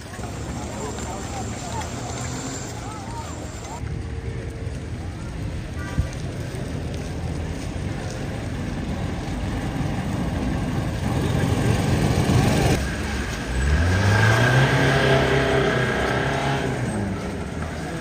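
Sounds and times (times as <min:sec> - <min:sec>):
vehicle engine revving: 0:09.6 - 0:18.0.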